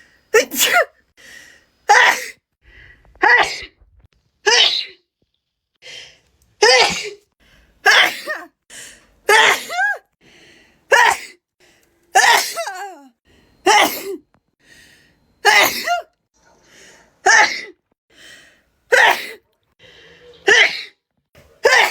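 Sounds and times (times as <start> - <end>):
person sneezing: 0.4 - 1.0, 6.6 - 7.2, 7.8 - 8.5, 12.2 - 13.0, 13.7 - 14.2, 15.4 - 16.1, 20.4 - 21.9.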